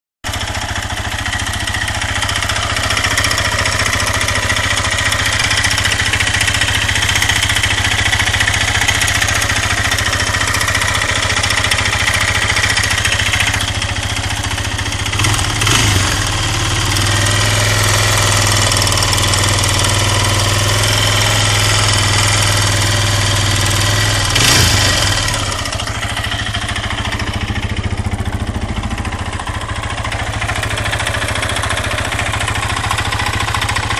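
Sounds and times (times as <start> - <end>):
engine running with a knock: 15.1 - 33.9.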